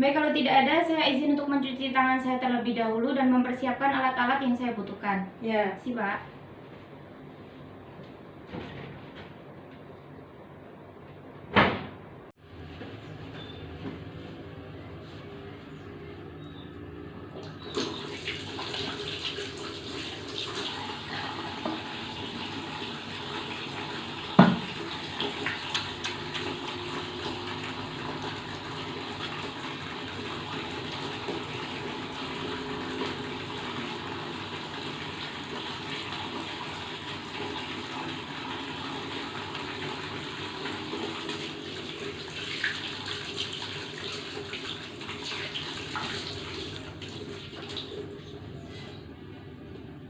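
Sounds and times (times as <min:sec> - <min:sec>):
water running from a tap: 0:17.4 - 0:48.4.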